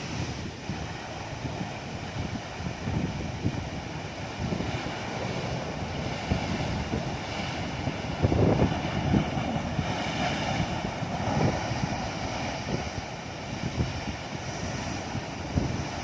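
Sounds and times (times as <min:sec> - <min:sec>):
surf washing: 0:00.0 - 0:16.0
wind buffeting microphone: 0:00.0 - 0:16.0.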